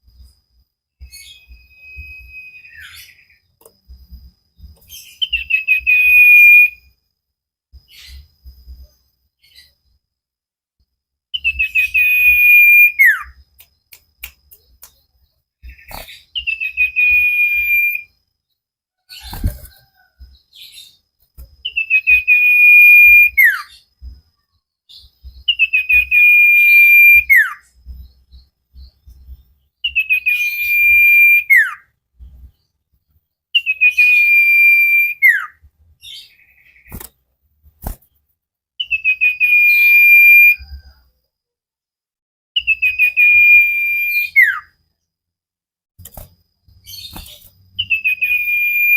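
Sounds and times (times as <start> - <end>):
bird singing whistled phrase: 1.0 - 3.4, 5.0 - 6.9, 11.4 - 13.4, 15.7 - 18.2, 21.7 - 23.8, 24.9 - 27.6, 29.8 - 31.8, 33.6 - 36.9, 38.8 - 41.0, 42.6 - 44.7, 47.0 - 48.9.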